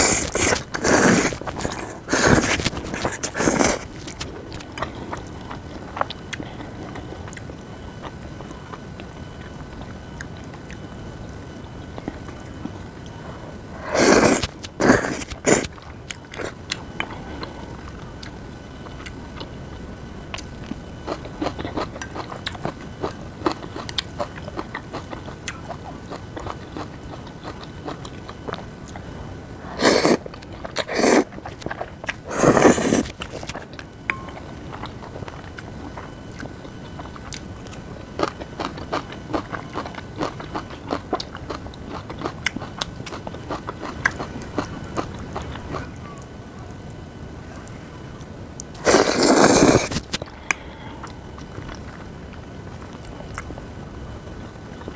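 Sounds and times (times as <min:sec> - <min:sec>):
person chewing crunchy food: 0:00.0 - 0:10.9, 0:11.6 - 0:46.0, 0:48.7 - 0:53.7.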